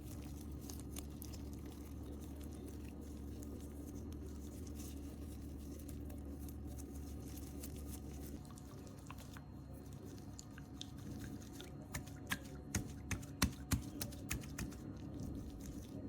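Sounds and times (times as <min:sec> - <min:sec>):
steady low hum: 0:00.0 - 0:16.0
slime clicking and popping: 0:11.9 - 0:14.9.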